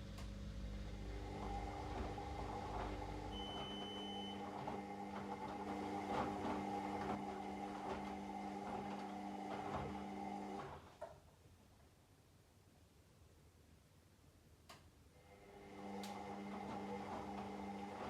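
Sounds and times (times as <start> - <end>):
washing machine motor humming: 0.0 - 11.0, 15.3 - 18.0.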